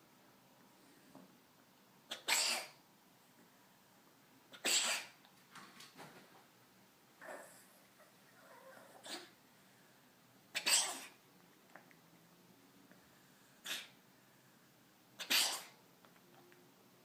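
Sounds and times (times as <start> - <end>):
cat coughing: 2.1 - 2.8, 4.5 - 5.2, 9.0 - 9.4, 10.5 - 11.2, 13.6 - 14.0, 15.2 - 15.8.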